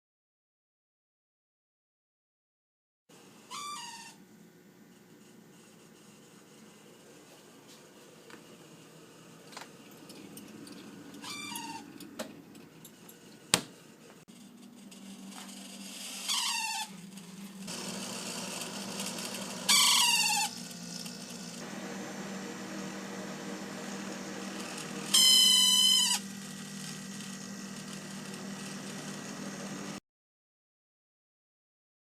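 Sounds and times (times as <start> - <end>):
fan motor squealing: 3.4 - 4.2, 10.3 - 12.2, 14.7 - 30.0
fan motor humming: 4.8 - 30.0.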